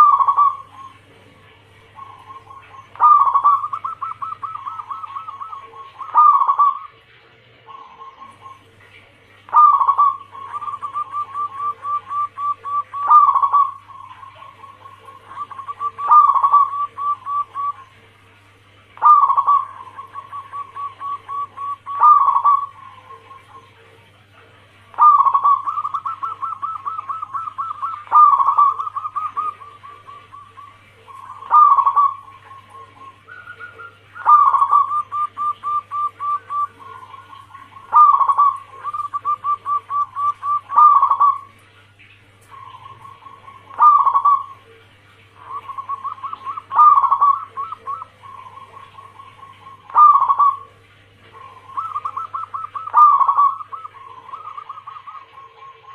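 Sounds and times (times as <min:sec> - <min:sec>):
dove cooing: 0:00.0 - 0:55.9.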